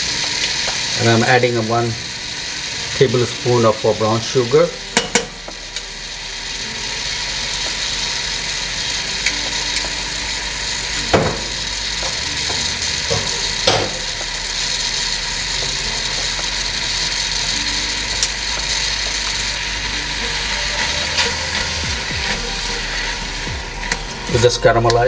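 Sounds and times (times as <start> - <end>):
fruit sizzling in a pan: 0.0 - 25.0
sharp knocks against a pan: 11.1 - 11.5.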